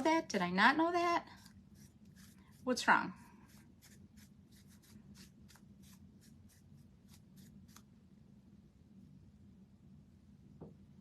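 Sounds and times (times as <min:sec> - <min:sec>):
scratchy strokes on wood: 0:01.4 - 0:02.7, 0:03.4 - 0:07.8.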